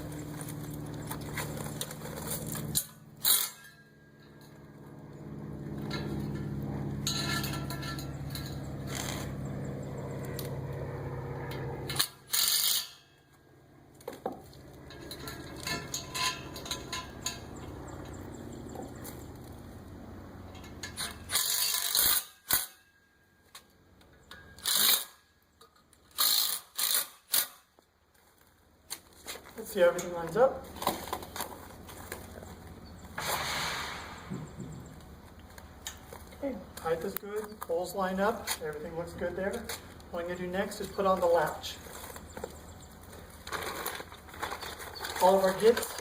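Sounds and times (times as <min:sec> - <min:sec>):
metallic clinks and knocks: 0:05.8 - 0:08.7, 0:14.4 - 0:18.2.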